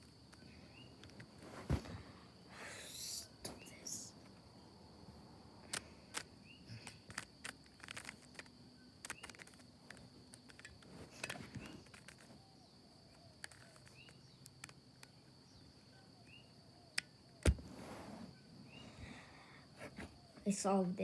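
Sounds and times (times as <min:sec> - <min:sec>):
plastic cube clicking and snapping: 0:05.7 - 0:12.3, 0:13.2 - 0:15.2.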